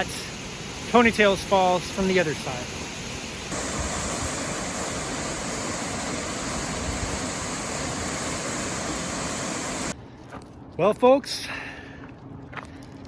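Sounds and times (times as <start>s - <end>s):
waterfall rushing into pool: 0.0s - 10.0s.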